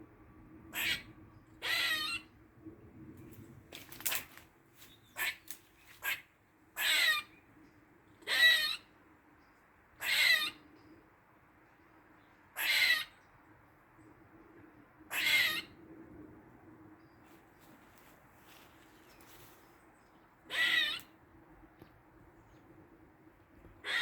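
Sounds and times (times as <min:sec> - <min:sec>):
squirrel rasping calls: 0:00.7 - 0:02.3, 0:05.1 - 0:07.4, 0:08.2 - 0:08.9, 0:10.0 - 0:10.6, 0:12.6 - 0:13.2, 0:15.1 - 0:15.8, 0:20.4 - 0:21.1, 0:23.8 - 0:24.0.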